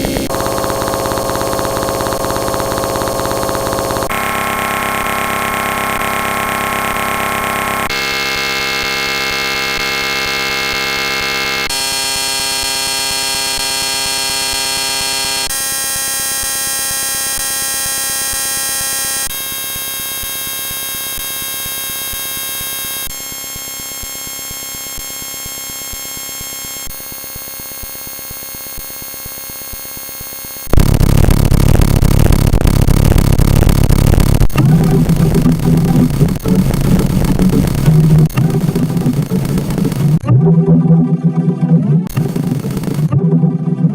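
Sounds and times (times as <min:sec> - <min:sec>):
loud rough noise: 0:00.0 - 0:14.6, 0:30.7 - 0:40.3, 0:42.0 - 0:43.2
harsh high-pitched tone chord: 0:30.8 - 0:43.9.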